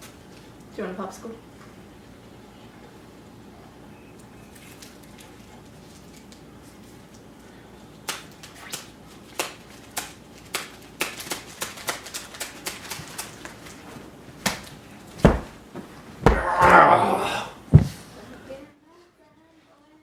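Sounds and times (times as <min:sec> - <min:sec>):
heavy thump: 0:15.2 - 0:16.9, 0:17.7 - 0:18.1.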